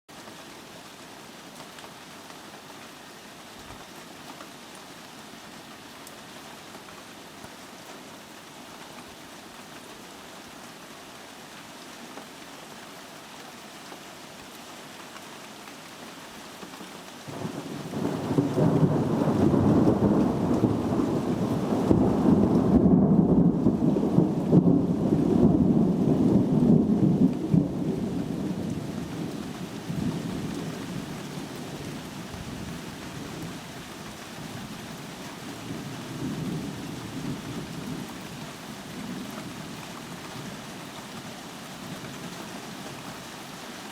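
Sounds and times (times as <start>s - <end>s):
steady rain hiss: 0.1s - 43.9s
thunder rumbling: 17.3s - 31.0s.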